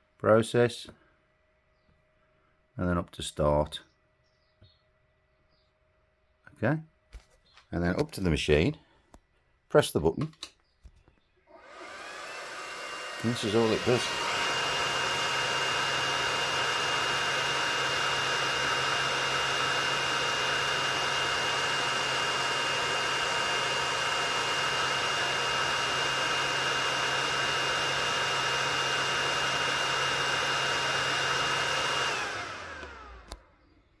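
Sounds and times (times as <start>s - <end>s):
fan whining and humming: 10.4s - 33.8s.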